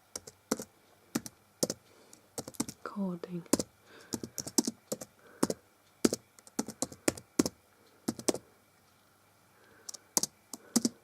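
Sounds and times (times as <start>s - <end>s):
typing on computer keyboard: 0.1s - 1.8s, 2.4s - 2.8s, 3.5s - 8.4s, 9.7s - 11.0s.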